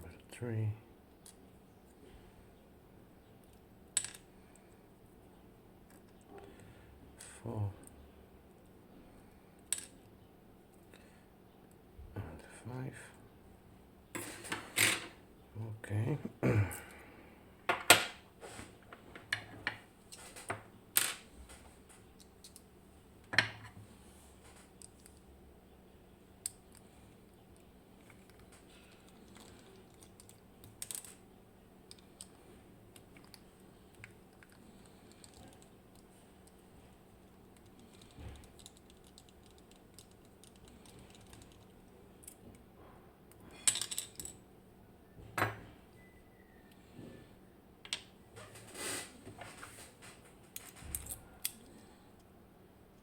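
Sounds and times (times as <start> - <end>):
metal lock parts clicking: 50.5 - 51.7.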